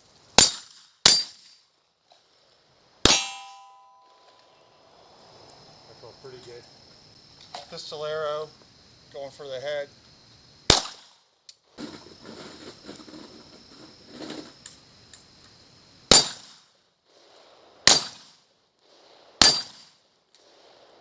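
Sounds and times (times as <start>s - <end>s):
pistol shots: 0.4s - 1.5s, 3.0s - 3.8s, 10.7s - 11.2s, 16.1s - 16.7s, 17.8s - 18.4s, 19.4s - 20.7s.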